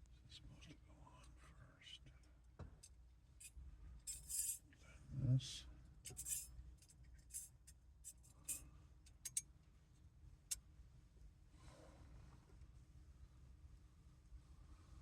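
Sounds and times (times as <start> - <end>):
small parts clicking and tapping: 6.0 - 9.5.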